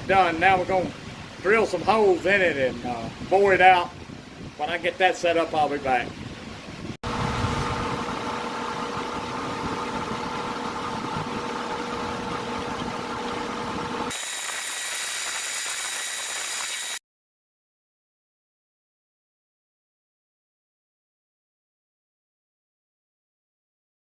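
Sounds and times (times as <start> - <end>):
high thin whine: 7.1 - 17.0
metal lathe humming: 7.1 - 17.0.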